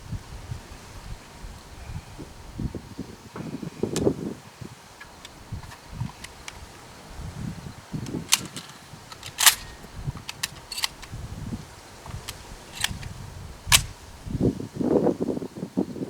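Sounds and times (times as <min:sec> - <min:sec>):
wind rumble on microphone: 0:00.0 - 0:16.0
sharp clicks and snaps: 0:08.0 - 0:11.2, 0:12.0 - 0:13.1, 0:13.7 - 0:14.0.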